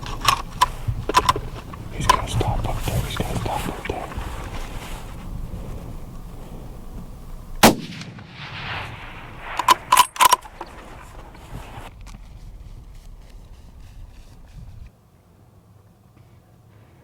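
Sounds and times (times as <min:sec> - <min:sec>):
rifle shot with echo: 0:07.6 - 0:11.4
metallic clicks: 0:09.5 - 0:10.8.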